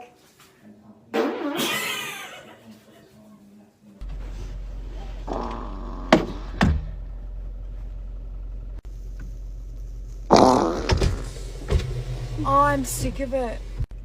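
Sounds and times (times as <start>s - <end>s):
car interior hum: 4.0s - 10.3s, 10.9s - 14.0s
loud rough sound: 10.2s - 12.5s.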